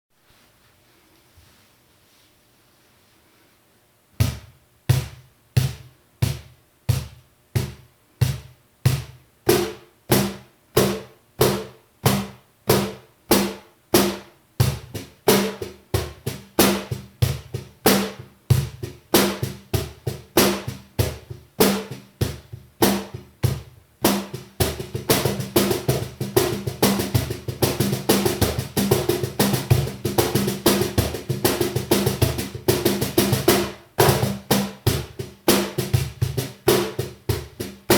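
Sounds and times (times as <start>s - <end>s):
cajon with buzzing snare wires: 4.2s - 37.9s.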